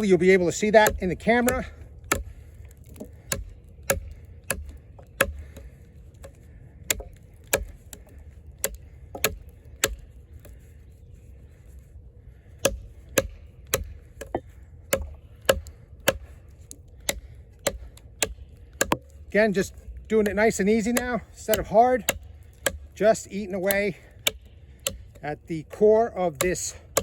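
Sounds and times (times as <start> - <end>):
knife blade chopping into log: 0.8 - 5.6, 8.6 - 10.0, 12.6 - 16.3, 20.9 - 22.8, 26.4 - 27.0.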